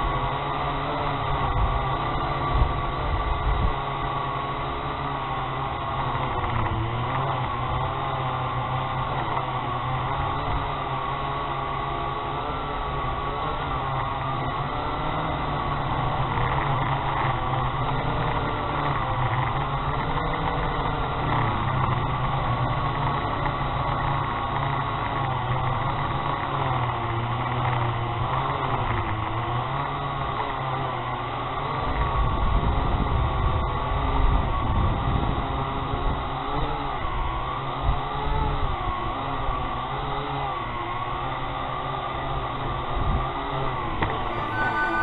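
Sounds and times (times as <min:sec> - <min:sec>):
wind rumble on microphone: 0:00.0 - 0:05.3
quadcopter propellers whirring: 0:00.0 - 0:21.6, 0:43.8 - 0:45.0.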